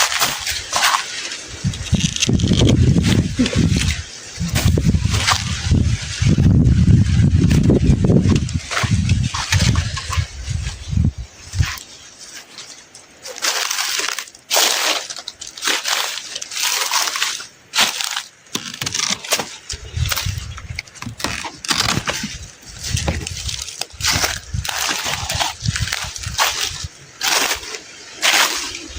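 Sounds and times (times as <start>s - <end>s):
leaves and stems snapping: 0.0s - 5.6s, 13.2s - 28.9s.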